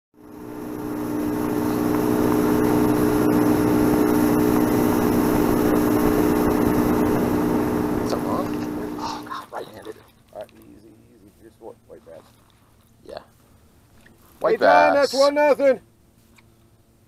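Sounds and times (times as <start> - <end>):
rushing wind and water: 0.2 - 10.2
motorboat engine running: 0.2 - 14.4.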